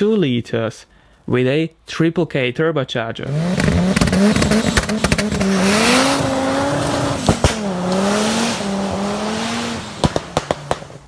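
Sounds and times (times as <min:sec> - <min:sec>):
race car engine revving: 0:03.2 - 0:11.0
sharp cracks: 0:03.6 - 0:08.7, 0:09.6 - 0:11.0.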